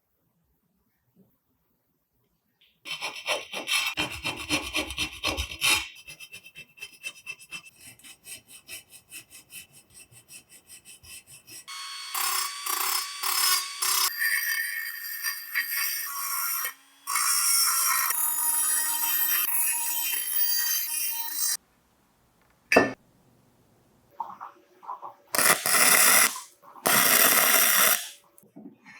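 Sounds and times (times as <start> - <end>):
hand filing strokes: 2.9 - 14.1, 25.4 - 28.2.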